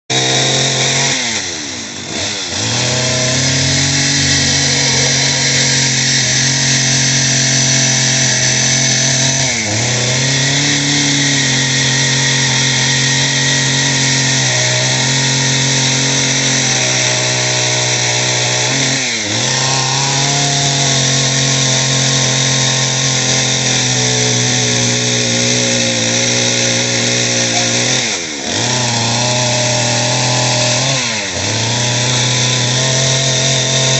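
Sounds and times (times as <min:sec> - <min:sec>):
chainsaw running at high revs: 0:00.1 - 0:33.9.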